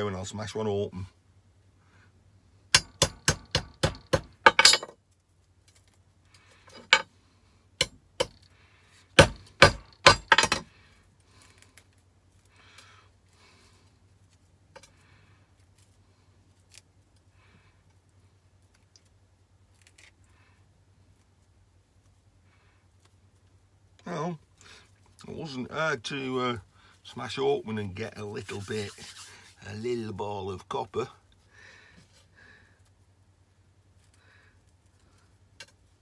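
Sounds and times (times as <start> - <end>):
hammer blows on small component: 2.8 - 4.9, 9.2 - 10.6
small pieces clicking and clinking: 2.8 - 4.9, 6.7 - 7.0, 9.2 - 10.7.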